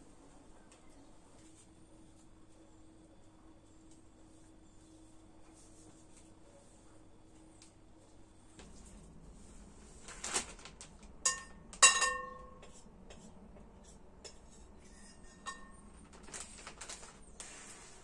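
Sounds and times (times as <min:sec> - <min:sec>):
dishes and utensils clinking: 0:11.2 - 0:13.3, 0:14.3 - 0:15.8.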